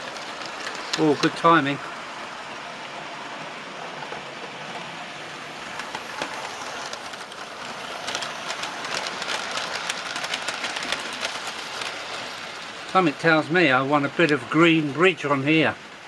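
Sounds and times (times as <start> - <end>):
wheels clicking over rail joints: 0.0 - 2.2, 2.8 - 14.4
model train motor whirr: 3.8 - 12.6.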